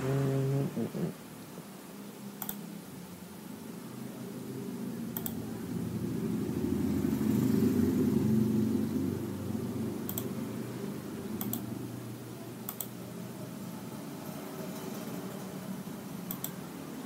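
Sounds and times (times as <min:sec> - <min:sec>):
sharp clicks: 0:02.4 - 0:02.6, 0:05.2 - 0:05.4, 0:11.4 - 0:11.7, 0:12.7 - 0:13.0
low steady rumble: 0:03.3 - 0:13.5.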